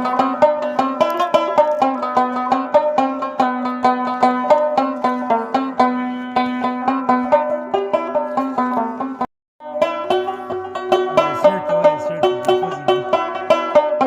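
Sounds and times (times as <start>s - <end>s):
plucked string instrument music: 0.0s - 14.0s
held low drone note: 11.0s - 13.2s.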